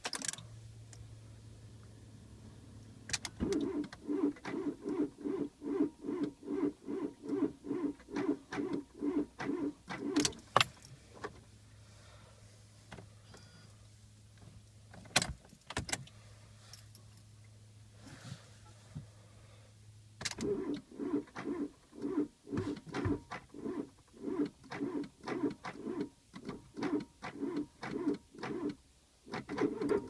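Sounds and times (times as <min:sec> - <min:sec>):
engine cranking slowly: 0:03.1 - 0:10.7, 0:20.4 - 0:30.0.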